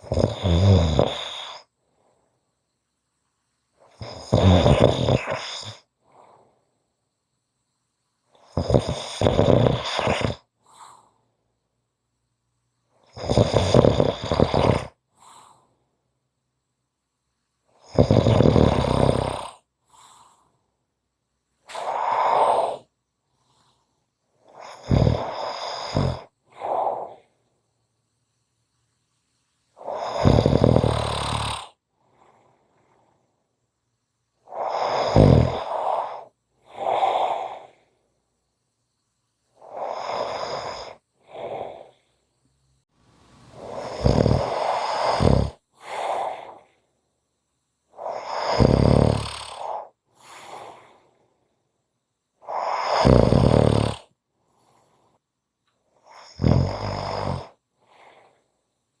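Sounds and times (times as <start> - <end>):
person snoring: 0.0 - 1.7, 3.8 - 6.4, 8.4 - 11.2, 13.0 - 15.6, 17.8 - 20.5, 21.7 - 22.9, 24.4 - 27.4, 29.8 - 33.2, 34.4 - 38.0, 39.6 - 42.2, 43.5 - 46.7, 47.9 - 51.2, 52.4 - 54.1, 56.0 - 58.4
quiet breath: 0.0 - 59.0.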